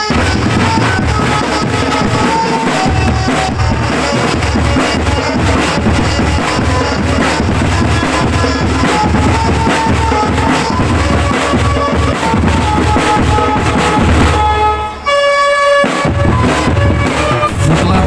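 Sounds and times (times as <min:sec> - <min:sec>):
drum band music: 0:00.0 - 0:18.0.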